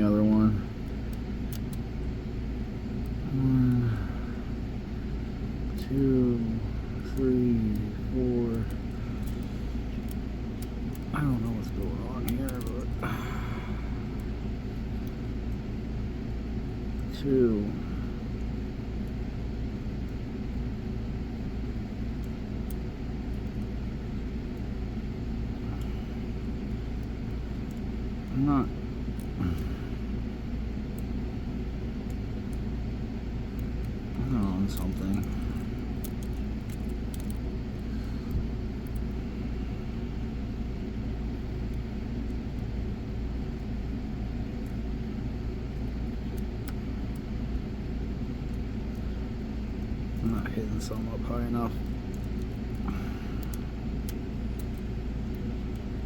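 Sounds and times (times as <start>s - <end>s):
low background rumble: 0.0s - 56.0s
lock pick ticking: 33.5s - 39.1s, 51.7s - 55.9s.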